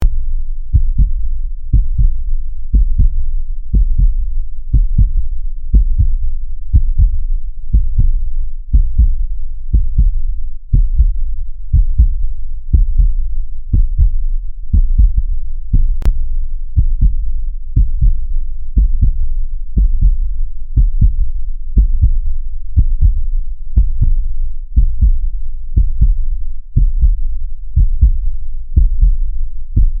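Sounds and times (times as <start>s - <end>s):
heartbeat lub-dub thumps: 0.0s - 30.0s.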